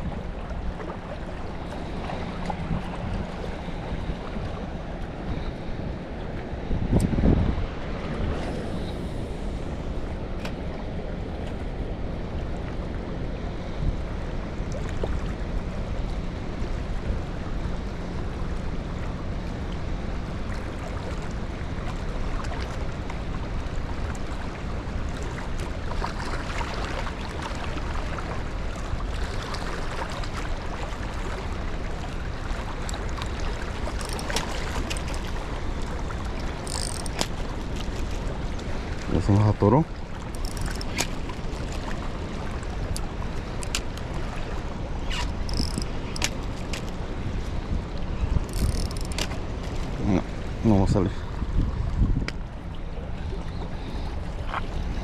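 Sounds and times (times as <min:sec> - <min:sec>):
wind buffeting microphone: 0:02.2 - 0:10.3, 0:44.1 - 0:55.0
river current rushing: 0:25.2 - 0:51.6
faint clicks: 0:36.6 - 0:37.4, 0:40.3 - 0:41.2, 0:45.2 - 0:47.0, 0:48.5 - 0:49.4.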